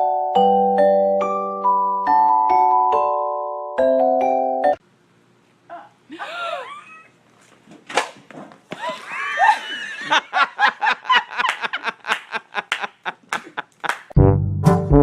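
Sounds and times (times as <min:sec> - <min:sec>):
person laughing: 0:05.7 - 0:07.2, 0:08.8 - 0:14.1
brass music: 0:14.2 - 0:15.0.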